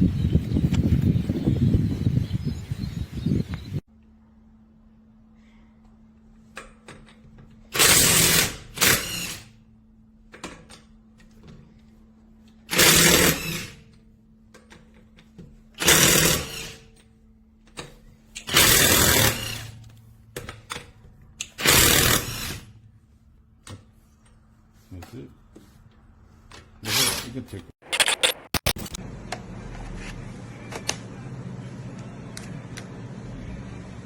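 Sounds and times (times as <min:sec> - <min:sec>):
impact wrench hammering: 0:12.7 - 0:13.8, 0:15.8 - 0:16.9, 0:18.4 - 0:20.8, 0:21.4 - 0:22.7.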